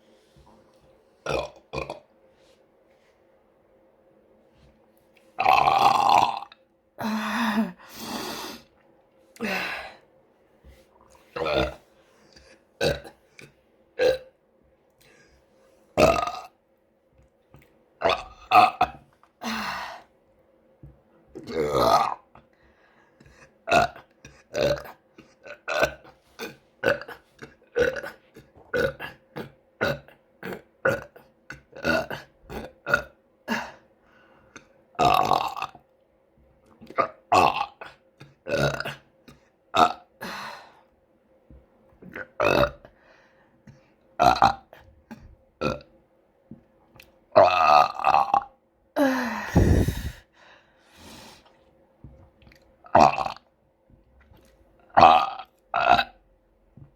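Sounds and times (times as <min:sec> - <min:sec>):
person burping: 0:01.3 - 0:02.0, 0:05.4 - 0:07.8, 0:11.4 - 0:11.8, 0:12.8 - 0:14.3, 0:16.0 - 0:16.6, 0:18.0 - 0:19.6, 0:21.4 - 0:22.3, 0:23.7 - 0:33.8, 0:35.0 - 0:35.8, 0:36.9 - 0:39.1, 0:39.8 - 0:40.2, 0:42.0 - 0:42.9, 0:44.2 - 0:44.8, 0:45.6 - 0:45.8, 0:47.4 - 0:50.2, 0:52.9 - 0:53.4, 0:55.0 - 0:56.2.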